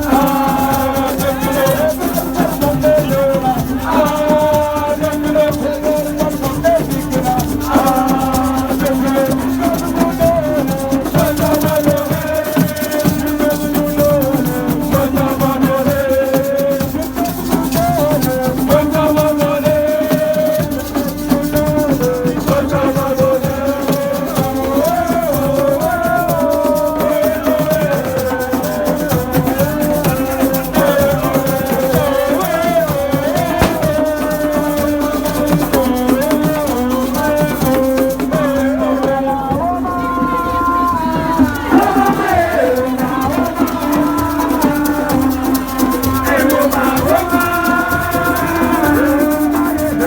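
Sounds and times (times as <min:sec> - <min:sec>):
shaken rattles: 0:26.7 - 0:38.4.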